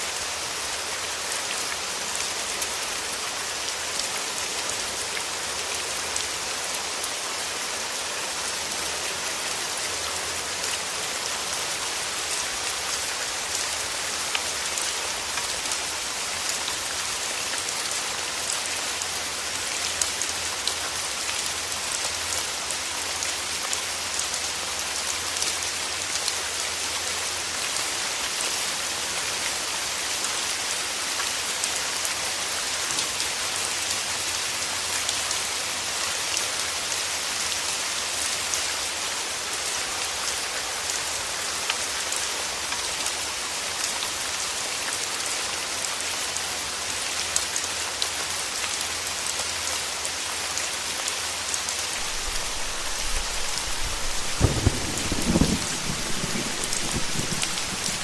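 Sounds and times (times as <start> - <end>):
steady rain falling: 0.0 - 58.0
thunder rumble: 52.0 - 58.0.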